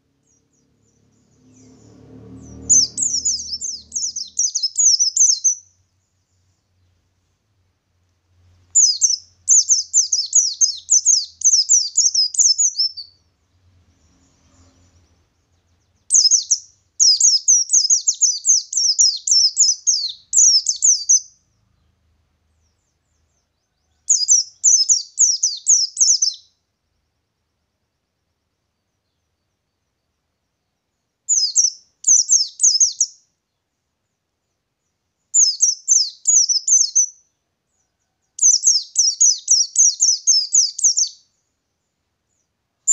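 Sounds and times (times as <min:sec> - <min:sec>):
bird singing rapid chirps: 0:00.0 - 0:07.0, 0:08.3 - 0:26.6, 0:30.8 - 0:33.3, 0:34.8 - 0:37.4, 0:38.4 - 0:41.5.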